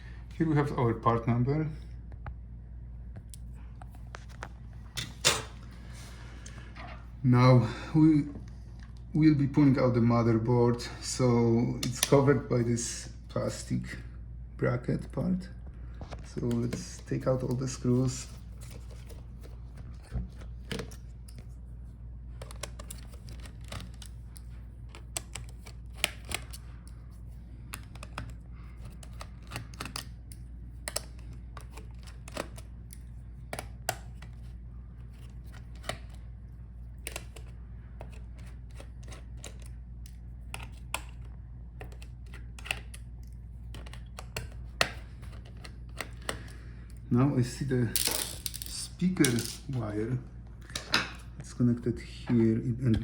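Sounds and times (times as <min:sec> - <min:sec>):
steady low hum: 0:00.0 - 0:53.0
plastic parts handled: 0:16.0 - 0:21.7, 0:22.3 - 0:49.8.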